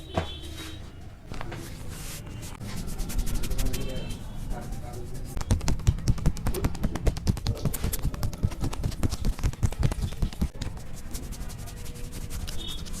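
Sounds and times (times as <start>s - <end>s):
hands tapping on a head: 5.4s - 10.8s.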